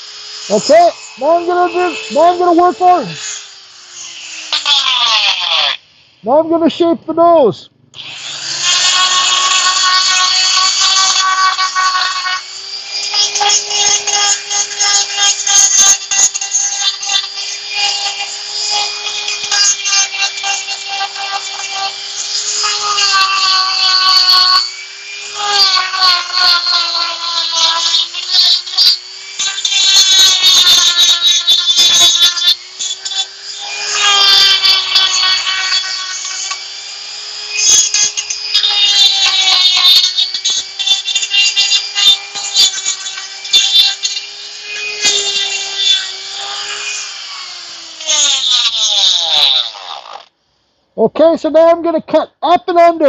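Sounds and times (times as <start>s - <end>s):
burr grinding into wood: 0.0s - 5.8s
die grinder whining: 0.0s - 50.4s.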